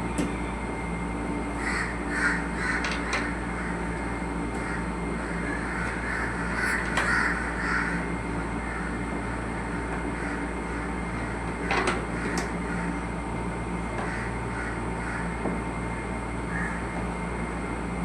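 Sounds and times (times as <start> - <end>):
steady low hum: 0.0 - 18.0
birds cawing: 1.5 - 13.1, 14.0 - 17.1.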